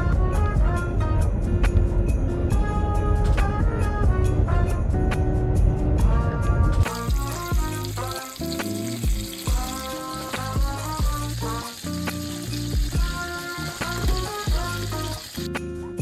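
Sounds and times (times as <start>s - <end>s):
background music with beat: 0.0s - 16.0s
food sizzling in a frying pan: 6.8s - 15.5s.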